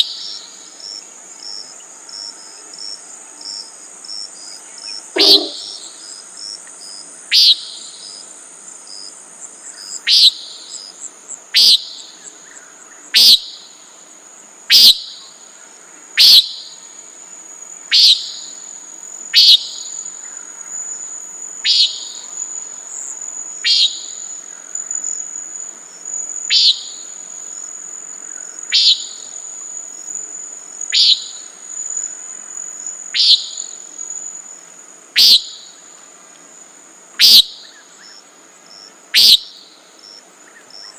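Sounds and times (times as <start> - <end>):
insects trilling: 0.0 - 40.9
bird nasal peent calls: 5.2 - 5.9, 21.7 - 22.3, 23.7 - 24.2, 26.5 - 27.0, 28.7 - 29.2, 31.0 - 31.3, 33.2 - 33.6, 35.2 - 35.6, 37.2 - 37.7, 39.2 - 39.5.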